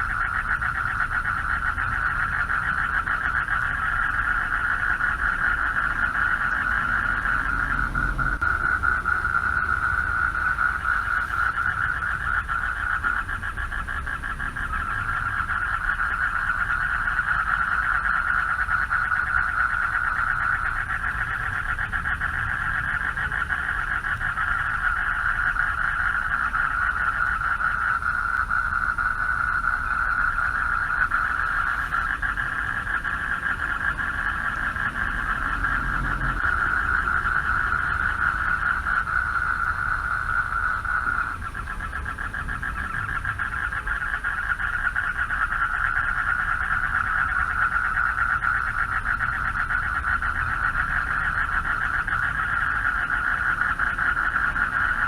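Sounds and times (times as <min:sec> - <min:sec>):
chorus of frogs trilling: 0:00.0 - 0:55.0.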